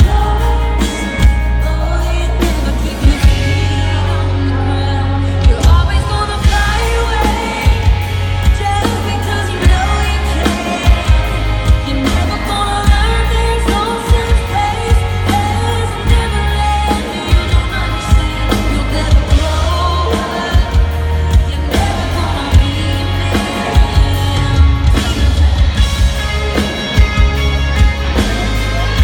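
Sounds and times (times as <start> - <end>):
person singing: 0.0 - 29.0
pop-country band music: 0.0 - 29.0.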